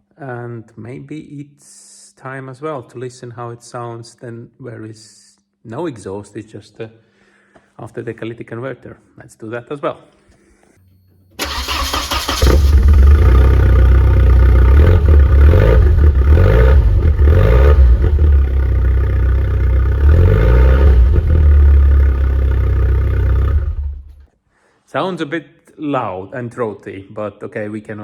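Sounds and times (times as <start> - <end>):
car engine revving: 11.4 - 24.2
car engine starting: 11.4 - 24.2.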